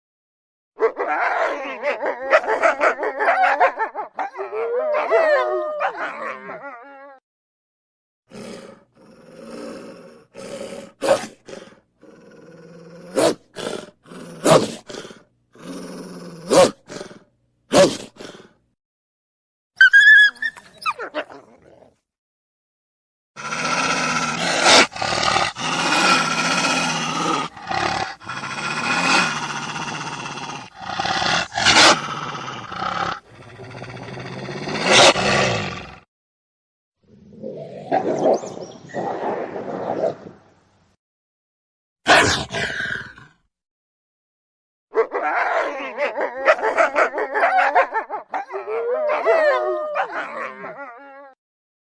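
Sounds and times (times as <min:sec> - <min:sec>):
wolf growling and snarling: 0:00.8 - 0:07.2, 0:08.3 - 0:18.6, 0:20.4 - 0:22.0, 0:23.4 - 0:36.1, 0:37.0 - 0:40.4, 0:42.1 - 0:43.5, 0:45.0 - 0:51.4
wolf loud outbursts: 0:23.4 - 0:36.0, 0:42.0 - 0:43.2, 0:44.9 - 0:50.8.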